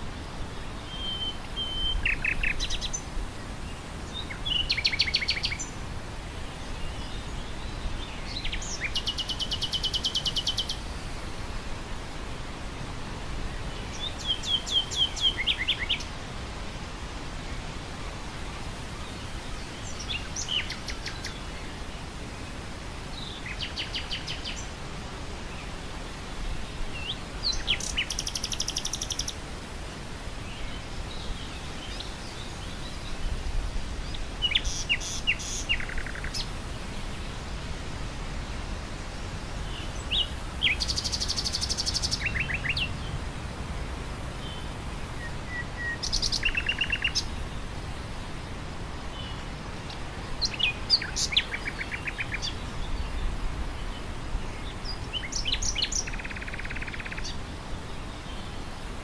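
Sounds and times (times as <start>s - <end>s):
wind through grass: 0.0s - 59.0s
nightingale singing: 0.9s - 3.1s, 4.1s - 5.8s, 6.9s - 10.8s, 13.9s - 16.1s, 19.7s - 21.5s, 23.2s - 24.8s, 27.0s - 29.4s, 34.1s - 36.5s, 39.7s - 43.0s, 45.2s - 47.4s, 49.1s - 53.2s, 54.8s - 57.4s.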